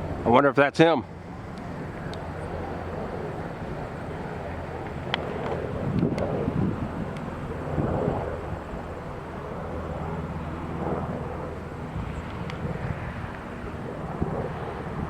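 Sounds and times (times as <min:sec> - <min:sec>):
distant aircraft engine drone: 0:00.0 - 0:15.0.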